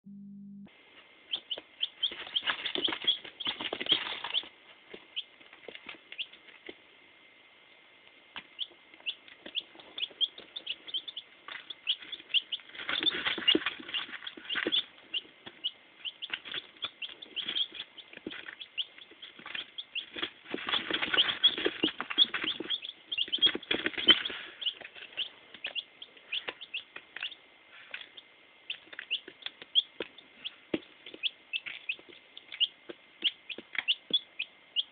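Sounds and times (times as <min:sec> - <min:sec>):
chicks peeping: 0:01.3 - 0:06.8, 0:08.3 - 0:34.9
rustling or flapping: 0:02.1 - 0:04.5, 0:12.0 - 0:14.9, 0:19.2 - 0:25.2.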